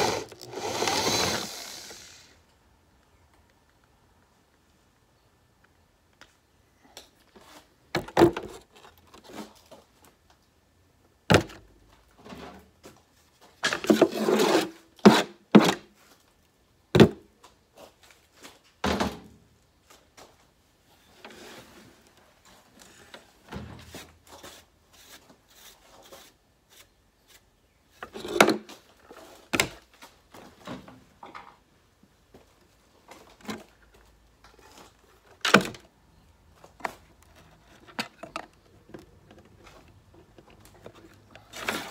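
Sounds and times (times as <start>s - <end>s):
rough scraping on metal case: 0.0s - 2.0s, 13.6s - 15.3s.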